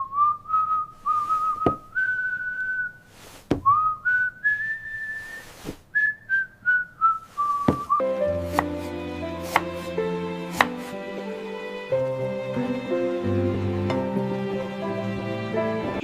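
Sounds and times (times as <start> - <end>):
person whistling a slow tune: 0.0 - 3.0, 3.6 - 8.2
sharp knocks: 7.7 - 8.0.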